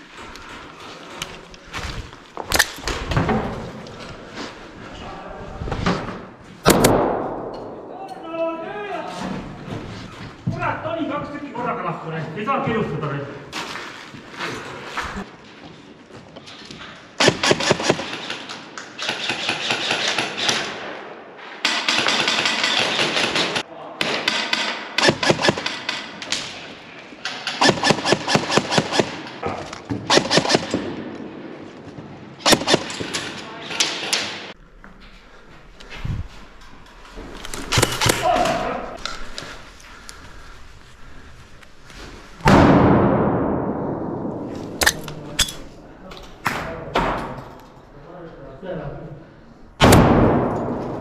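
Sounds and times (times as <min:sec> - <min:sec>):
sharp cracks: 0:02.4 - 0:03.0, 0:21.7 - 0:26.6, 0:30.1 - 0:31.0, 0:32.4 - 0:34.6, 0:37.5 - 0:39.2
loud echoing bang: 0:06.7 - 0:08.0, 0:42.4 - 0:45.4, 0:49.8 - 0:51.0
airsoft gun bursts: 0:25.0 - 0:25.8, 0:27.5 - 0:29.2.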